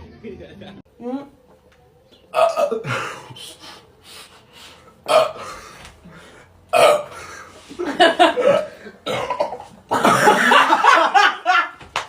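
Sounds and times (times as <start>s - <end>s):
men burping: 2.3s - 3.6s, 5.0s - 5.9s, 6.7s - 10.9s.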